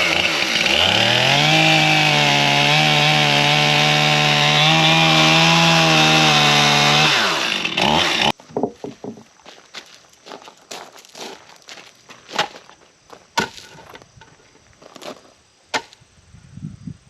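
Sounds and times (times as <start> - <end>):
chainsaw revving: 0.0 - 8.4.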